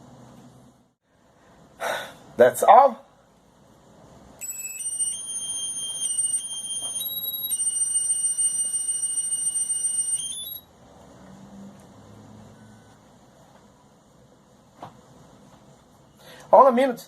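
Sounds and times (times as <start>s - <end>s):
electronic beep tones: 4.4s - 10.7s.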